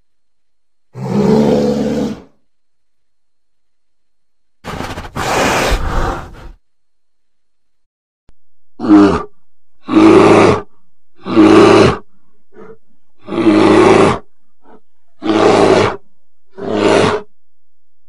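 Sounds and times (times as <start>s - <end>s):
bear roaring: 0.9s - 2.4s, 4.7s - 6.6s, 8.8s - 17.3s.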